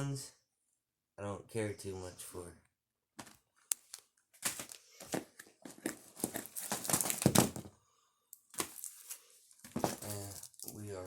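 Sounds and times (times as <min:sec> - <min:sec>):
packaging rustling: 0:03.2 - 0:07.7, 0:08.4 - 0:11.0.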